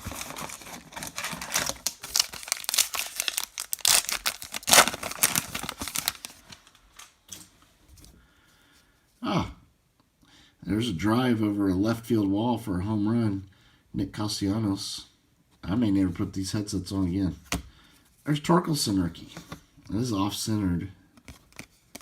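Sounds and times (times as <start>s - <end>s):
wrapper crinkling and tearing: 0.0s - 7.2s.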